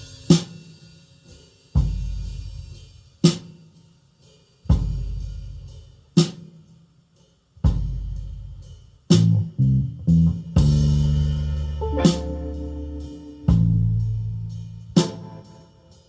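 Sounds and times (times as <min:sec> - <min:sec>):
snare drum crack: 0:11.8 - 0:13.6.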